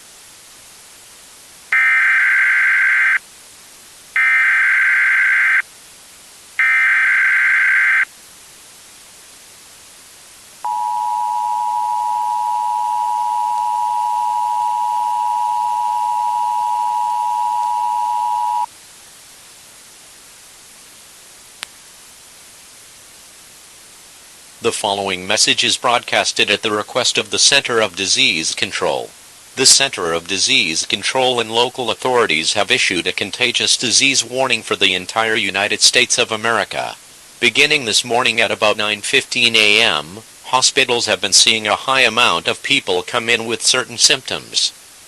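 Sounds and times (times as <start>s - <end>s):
steady hiss: 0.0s - 45.0s
two-tone attention signal: 10.7s - 18.7s.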